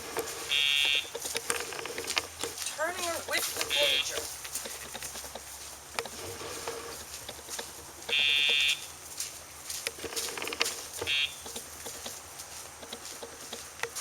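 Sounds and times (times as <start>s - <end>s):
electronic buzzer: 0.5s - 1.1s, 8.1s - 8.8s, 11.0s - 11.4s.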